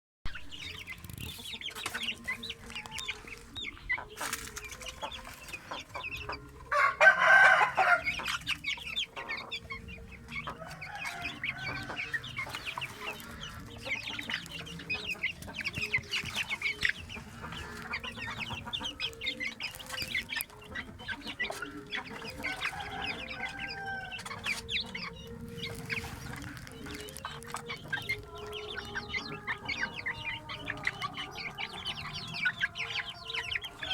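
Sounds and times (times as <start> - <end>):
chickens clucking: 0.3 - 33.9
rooster crowing: 6.7 - 8.2, 10.5 - 12.2, 22.5 - 24.2.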